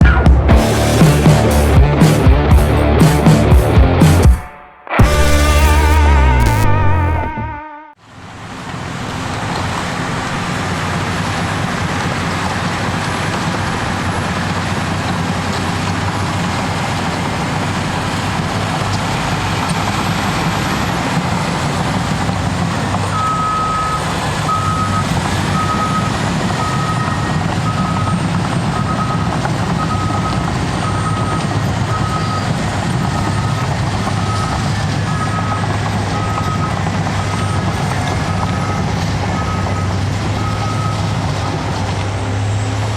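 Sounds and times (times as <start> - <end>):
bulldozer diesel engine running: 0.0 - 4.4, 8.0 - 42.9
reversing alarm beeping: 23.1 - 41.6.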